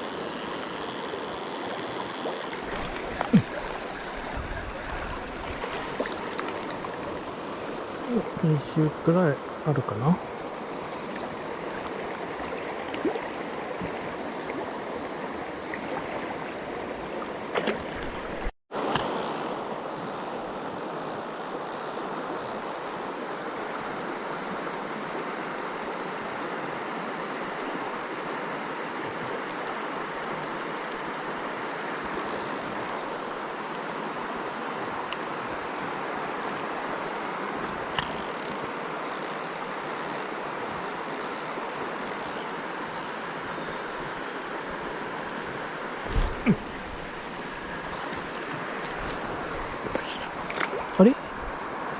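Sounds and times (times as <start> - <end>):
stream rushing over rocks: 45.8 - 51.9.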